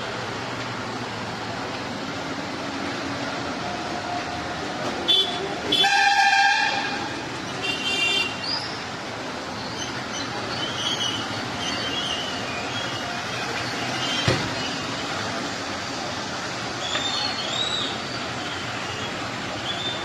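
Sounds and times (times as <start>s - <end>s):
horn blasts: 5.1s - 8.3s.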